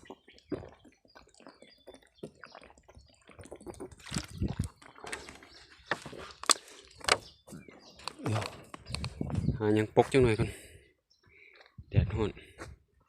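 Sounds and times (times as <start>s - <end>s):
twigs and leaves crackling: 3.7s - 9.2s.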